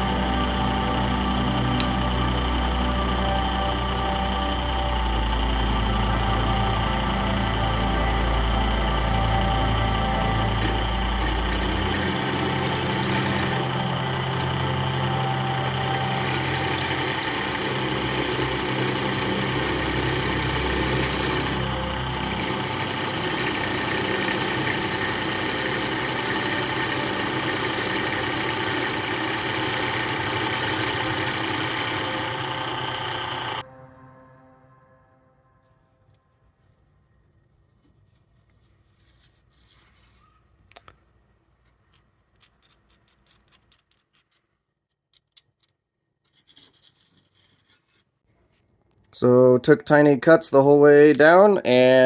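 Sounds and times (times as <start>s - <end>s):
drill press running: 0.0s - 33.6s
end mill cutting metal: 0.0s - 33.6s
soft rustle: 36.2s - 40.7s.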